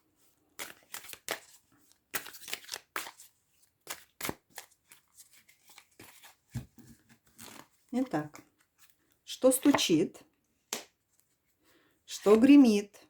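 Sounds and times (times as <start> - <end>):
cards being shuffled: 0.6 - 9.0.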